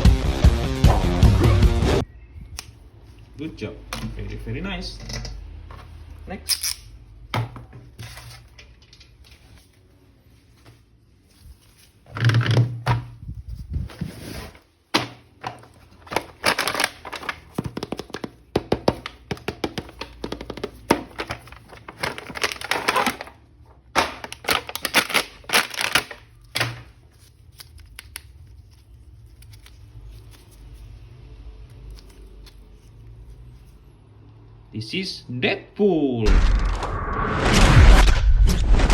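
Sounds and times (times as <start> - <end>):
plastic packaging crinkling: 15.4 - 31.0.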